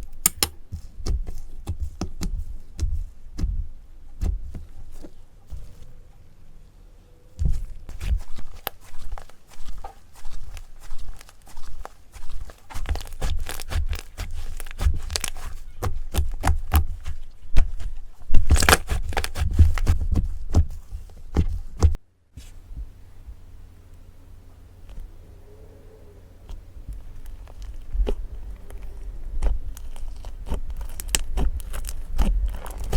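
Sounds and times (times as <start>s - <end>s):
slime crackling and popping: 7.9s - 20.6s, 26.5s - 32.9s.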